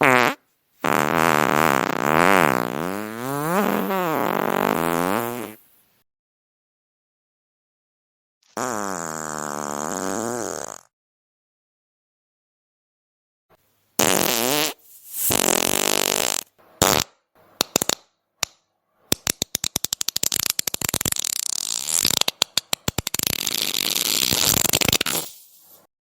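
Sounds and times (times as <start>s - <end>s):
farting sounds: 0.0s - 5.6s, 8.5s - 10.9s, 14.0s - 17.1s, 19.7s - 25.9s.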